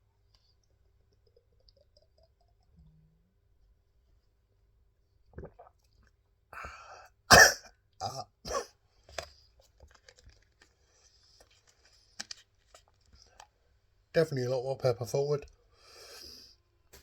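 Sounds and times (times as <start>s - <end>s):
man coughing: 6.6s - 8.7s
man clearing his throat: 6.6s - 8.8s.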